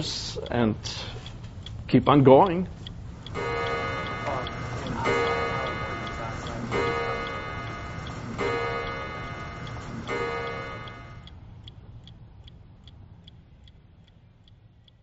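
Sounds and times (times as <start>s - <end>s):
clock ticking: 0.0s - 15.0s
clock striking: 3.2s - 11.4s.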